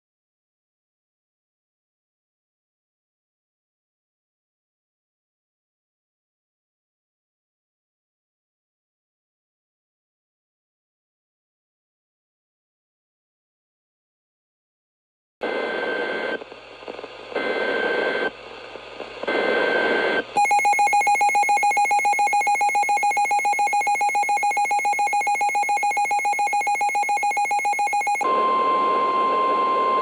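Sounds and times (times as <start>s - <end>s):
screeching data bursts: 20.4s - 28.2s.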